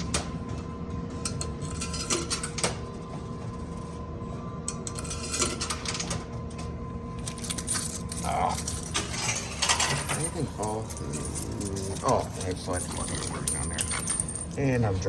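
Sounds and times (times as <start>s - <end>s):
machine hum: 0.0s - 15.0s
coins dropping and clinking: 4.9s - 6.2s, 7.2s - 14.6s.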